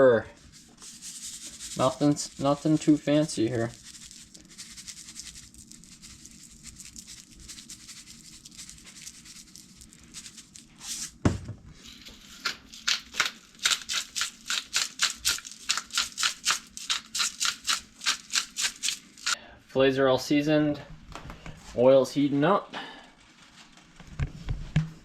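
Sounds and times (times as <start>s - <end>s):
seasoning shaker rattling: 0.4s - 11.2s, 11.8s - 19.4s.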